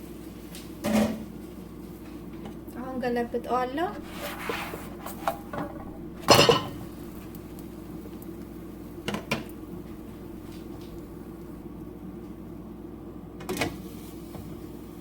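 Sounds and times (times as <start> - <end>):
metal pan clattering: 5.0 - 6.8.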